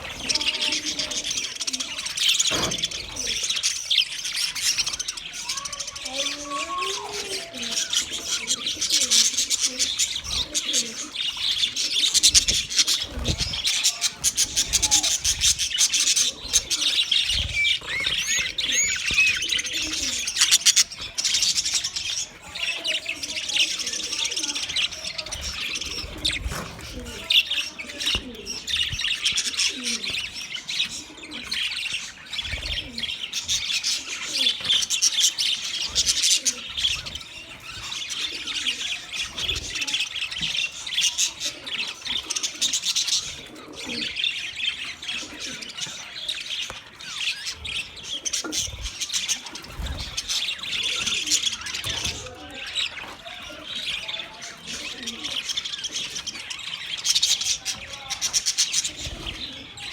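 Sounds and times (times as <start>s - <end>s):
budgerigars chirping: 0.0s - 59.9s.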